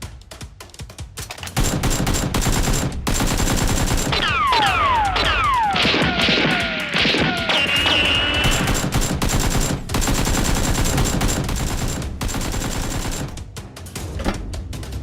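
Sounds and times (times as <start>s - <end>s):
background music: 0.0s - 15.0s
rapid machine gun fire: 1.4s - 13.6s.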